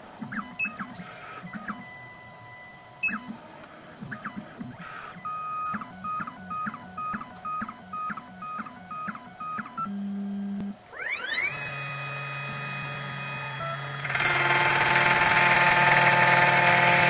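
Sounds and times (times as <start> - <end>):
stepper motors whining: 10.9 - 17.0.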